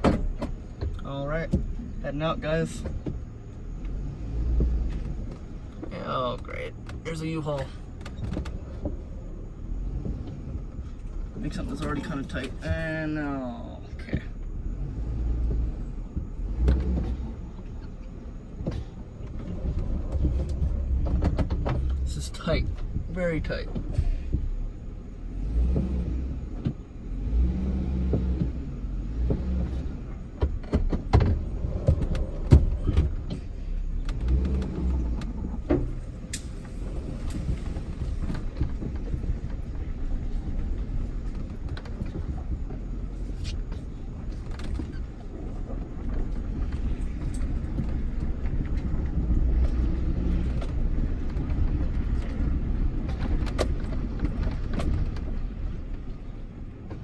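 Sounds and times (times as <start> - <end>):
truck engine and road rumble: 0.0 - 57.0
sharp knocks and rattles: 15.4 - 24.7, 29.2 - 57.0.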